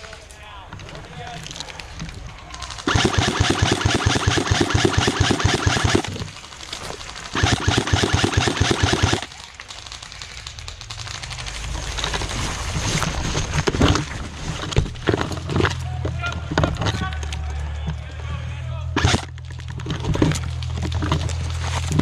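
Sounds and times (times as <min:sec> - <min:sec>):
field noise: 0:00.0 - 0:22.0
airsoft gun automatic burst: 0:02.6 - 0:11.8, 0:19.0 - 0:19.3
scattered airsoft shots: 0:02.7 - 0:11.4, 0:19.0 - 0:19.3.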